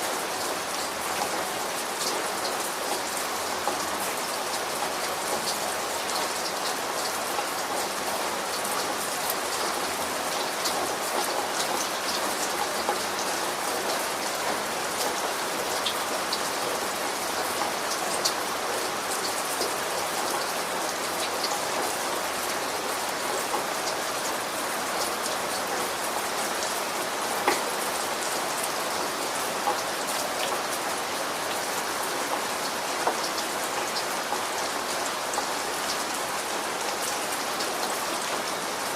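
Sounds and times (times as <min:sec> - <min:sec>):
rain pattering on a surface: 0:00.0 - 0:38.9.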